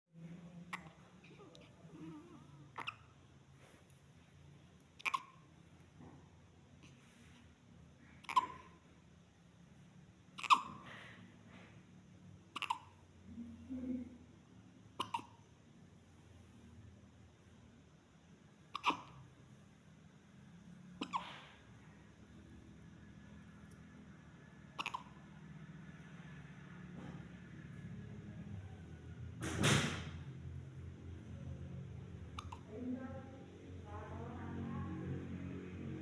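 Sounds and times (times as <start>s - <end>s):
faint steady low hum: 0.2s - 29.4s, 30.2s - 36.0s
baby hiccuping: 0.6s - 3.2s, 5.0s - 5.5s, 8.1s - 8.8s, 10.4s - 11.0s, 12.5s - 13.0s, 14.9s - 15.5s, 18.7s - 19.3s, 21.0s - 21.6s, 24.7s - 25.3s, 32.3s - 32.7s.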